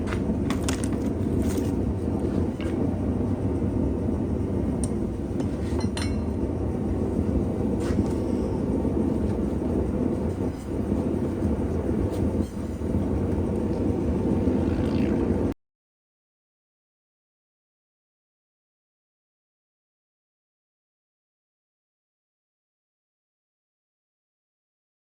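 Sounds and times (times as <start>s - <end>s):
forge fire roaring: 0.0s - 15.5s
light metallic clinks: 4.8s - 6.4s.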